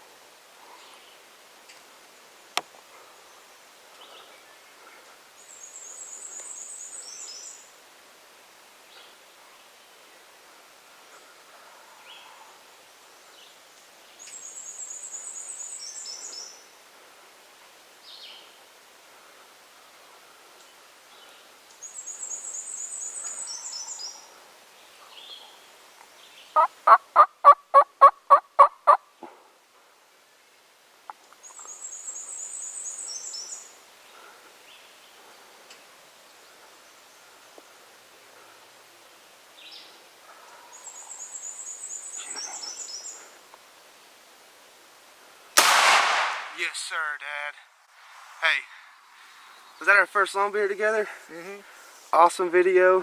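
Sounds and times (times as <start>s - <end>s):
low rhythmic bird call: 18.1s - 43.6s
turkey yelps: 26.6s - 29.0s
high songbird notes: 39.6s - 43.3s.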